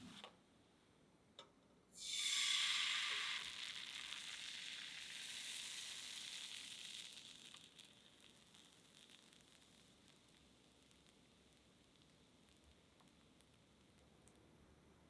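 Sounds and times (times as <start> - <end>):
crepe batter sizzling in a pan: 2.0 - 15.0.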